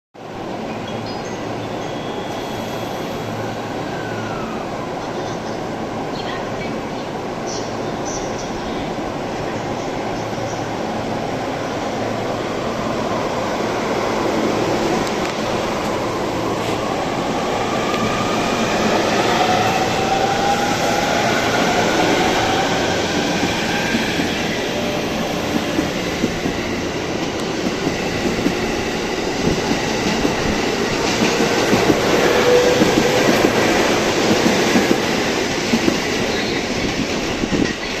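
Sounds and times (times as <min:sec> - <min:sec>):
train wheels clattering on rails: 0:25.2 - 0:38.0.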